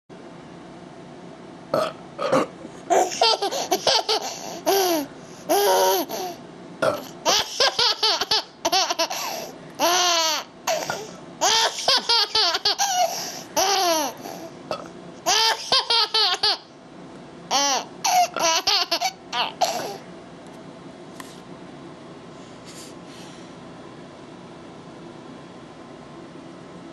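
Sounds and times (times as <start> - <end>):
child laughing: 2.9 - 6.4, 7.2 - 14.4, 15.2 - 16.7, 17.5 - 20.0.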